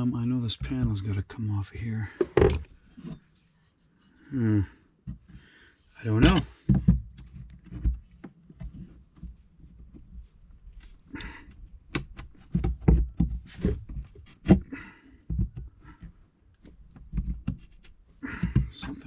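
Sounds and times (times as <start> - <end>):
hands prying plastic panel: 11.5 - 18.7.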